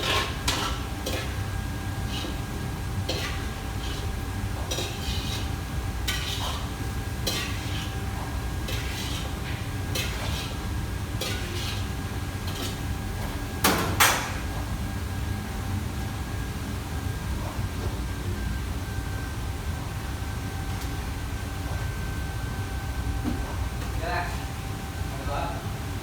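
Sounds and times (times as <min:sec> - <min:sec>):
steady low hum: 0:00.0 - 0:26.0
utensils clinking on dishes: 0:06.1 - 0:07.9.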